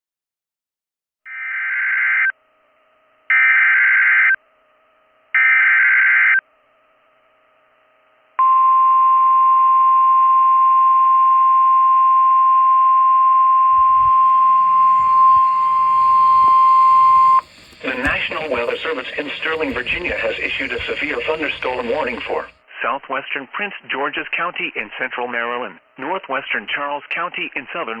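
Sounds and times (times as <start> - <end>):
steady warning alarm tone: 1.3 - 9.8, 13.7 - 22.6
buzzing digital data tones: 13.8 - 22.6.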